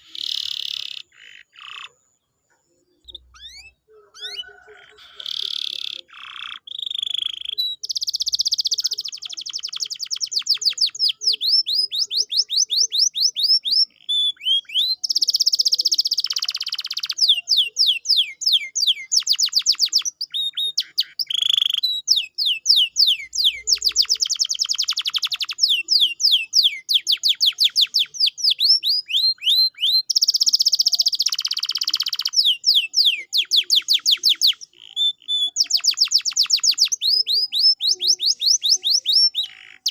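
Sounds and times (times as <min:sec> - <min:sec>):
canary singing: 0:00.0 - 0:39.9.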